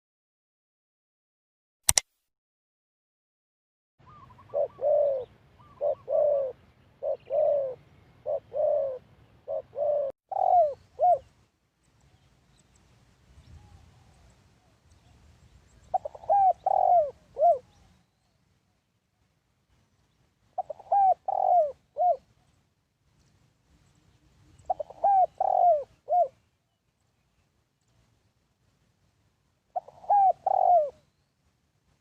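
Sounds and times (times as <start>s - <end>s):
dove cooing: 4.0s - 11.3s, 15.7s - 18.0s, 20.5s - 22.5s, 24.5s - 26.4s, 29.7s - 31.1s.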